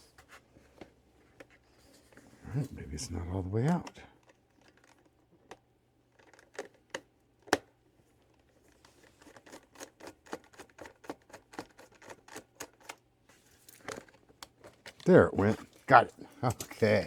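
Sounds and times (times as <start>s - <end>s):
hand tools clicking on plastic: 3.6s - 7.7s, 8.3s - 13.0s.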